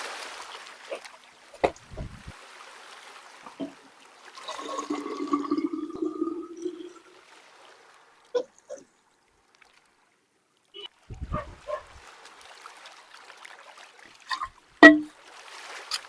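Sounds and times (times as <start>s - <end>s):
water running: 4.4s - 7.2s.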